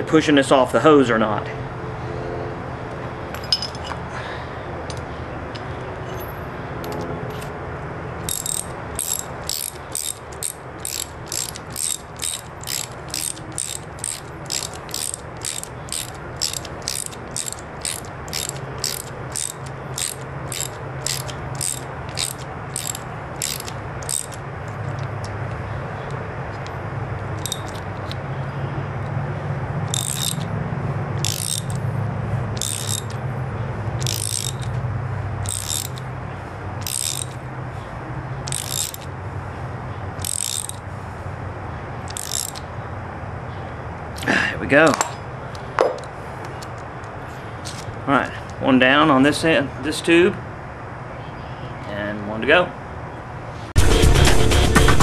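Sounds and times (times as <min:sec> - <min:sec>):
ratchet wrench clicking: 0:08.2 - 0:25.4, 0:27.3 - 0:28.2, 0:29.9 - 0:30.5, 0:31.2 - 0:31.8, 0:32.6 - 0:33.2, 0:34.0 - 0:34.8, 0:35.4 - 0:36.1, 0:36.8 - 0:37.4, 0:38.4 - 0:39.1, 0:40.2 - 0:40.8, 0:42.1 - 0:42.7, 0:47.6 - 0:47.9.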